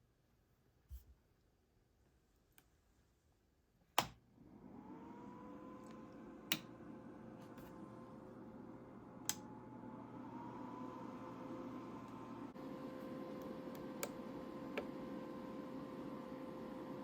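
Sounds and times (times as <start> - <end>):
electrical hum with whine: 4.4 - 17.0.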